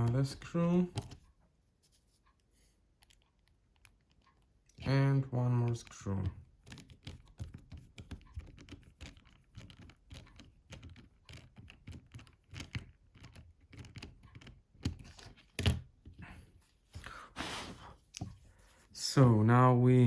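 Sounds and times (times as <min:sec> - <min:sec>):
plastic phone parts tapping: 0:00.0 - 0:01.3, 0:05.5 - 0:16.3.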